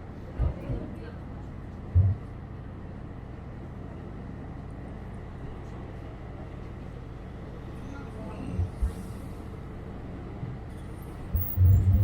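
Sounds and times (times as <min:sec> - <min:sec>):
tram rumbling along track: 0:00.0 - 0:12.0.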